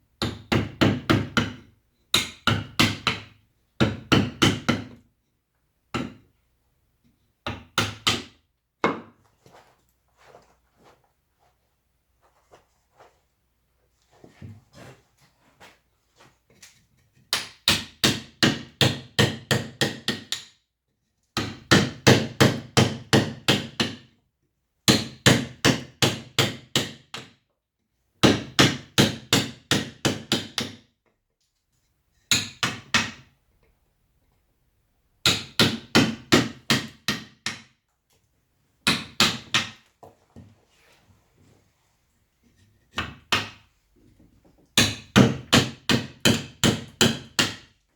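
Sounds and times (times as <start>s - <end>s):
mallet striking chisel into wood: 0.2s - 5.0s, 5.9s - 6.2s, 7.4s - 9.1s, 17.3s - 20.5s, 21.4s - 24.0s, 28.2s - 30.8s, 32.3s - 33.2s, 35.2s - 37.7s, 38.8s - 39.8s, 42.9s - 43.6s, 44.8s - 47.7s.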